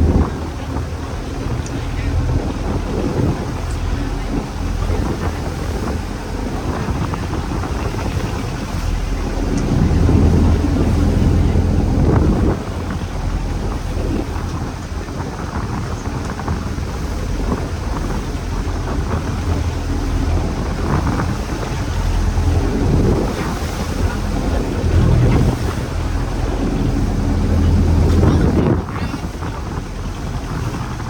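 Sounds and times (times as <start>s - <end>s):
boat engine running: 0.0s - 31.0s
waves slapping hull: 0.0s - 31.0s
wind buffeting microphone: 0.0s - 31.0s.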